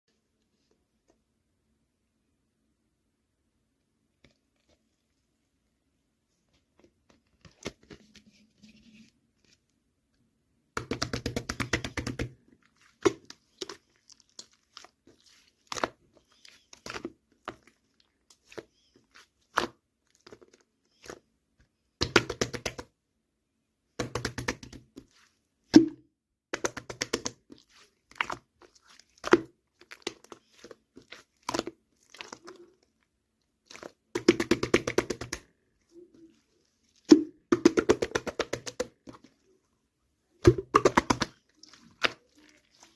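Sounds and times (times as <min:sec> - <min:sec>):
slime squished by hand: 0:24.0 - 0:39.6, 0:40.4 - 0:42.9.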